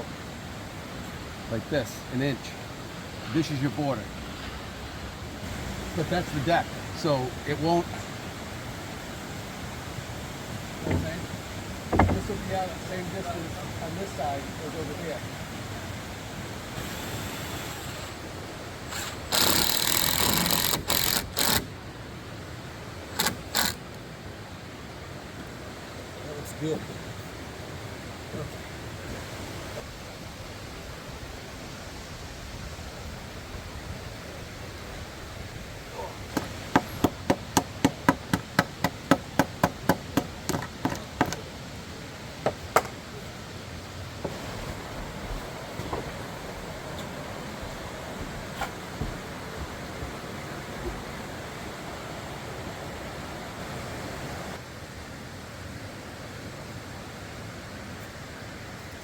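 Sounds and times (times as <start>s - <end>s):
hammer striking wood: 10.8s - 11.3s, 11.9s - 12.5s, 36.3s - 41.4s, 42.4s - 42.9s.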